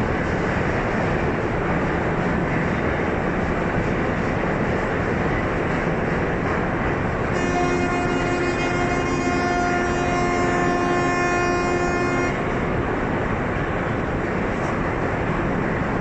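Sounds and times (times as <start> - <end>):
rushing background noise: 0.0 - 16.0
ship's horn blast: 7.3 - 12.7.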